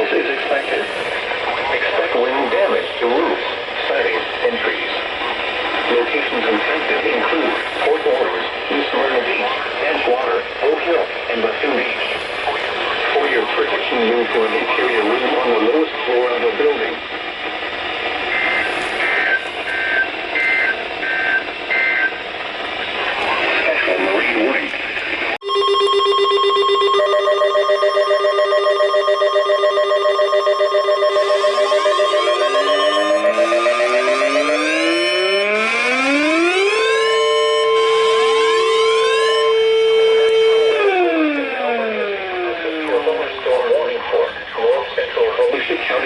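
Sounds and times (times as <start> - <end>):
warning siren: 25.4 - 43.9.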